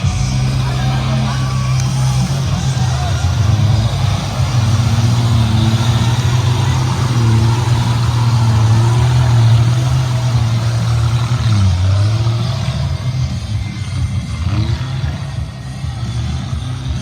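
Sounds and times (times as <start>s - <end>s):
off-road vehicle engine running hard: 0.0s - 17.0s.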